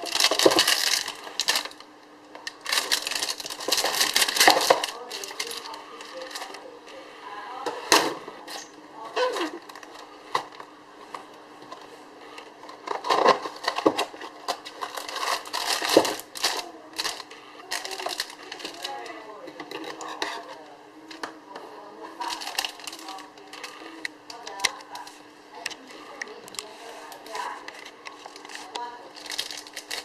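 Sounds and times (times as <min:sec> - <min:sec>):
packaging clicks and rustles: 0:00.0 - 0:06.6, 0:12.7 - 0:20.1, 0:22.2 - 0:25.1, 0:25.7 - 0:30.0
faint steady hum: 0:00.0 - 0:30.0
muffled voices: 0:03.7 - 0:13.4, 0:15.8 - 0:29.4.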